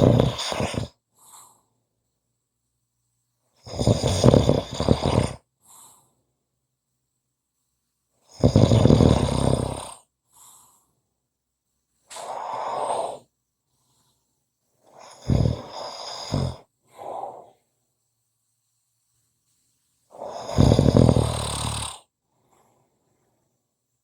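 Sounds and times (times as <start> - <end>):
person snoring: 0.0 - 1.6, 3.6 - 6.0, 8.3 - 10.1, 12.1 - 13.3, 14.8 - 17.6, 20.1 - 22.1.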